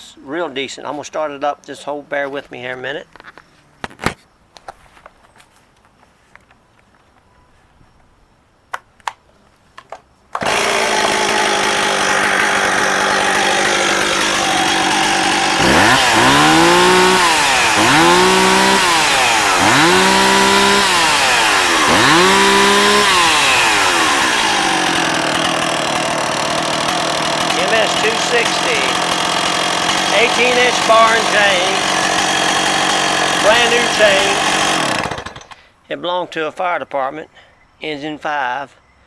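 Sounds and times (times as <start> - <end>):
chainsaw engine revving: 10.4 - 35.6.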